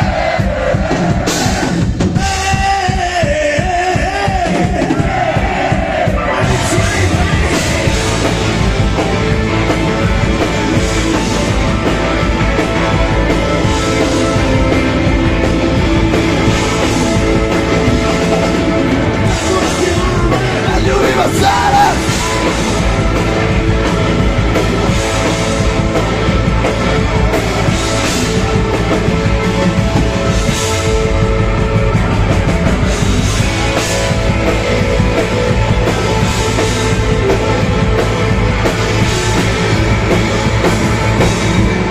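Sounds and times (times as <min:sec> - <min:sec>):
live rock band playing: 0:00.0 - 0:41.9.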